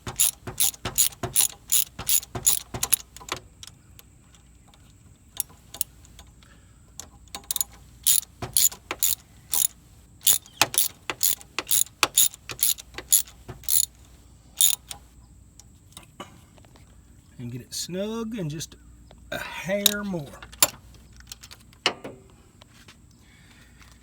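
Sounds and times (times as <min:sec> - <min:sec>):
socket ratchet clicking: 0:00.0 - 0:04.1, 0:05.4 - 0:06.4, 0:07.0 - 0:15.0.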